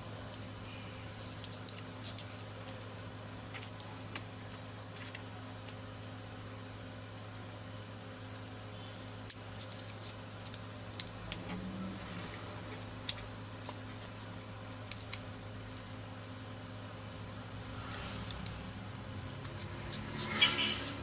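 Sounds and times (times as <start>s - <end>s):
steady low hum: 0.0s - 21.0s
light clicks of small parts: 14.8s - 15.9s, 17.9s - 20.1s.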